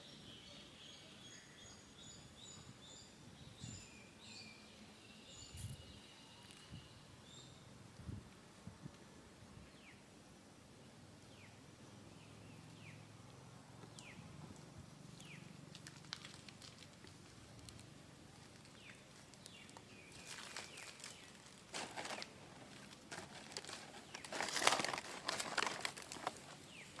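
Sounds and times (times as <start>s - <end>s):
crackling rustling: 14.0s - 27.0s.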